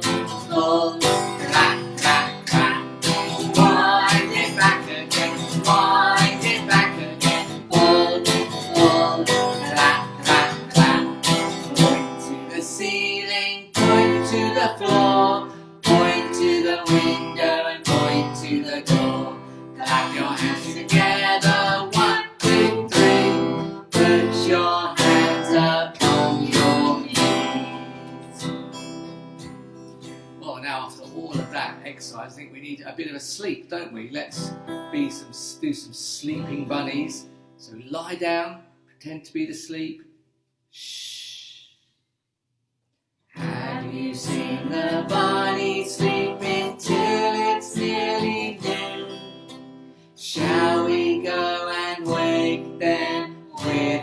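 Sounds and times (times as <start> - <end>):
acoustic guitar strummed: 0.0 - 30.5, 43.4 - 54.0.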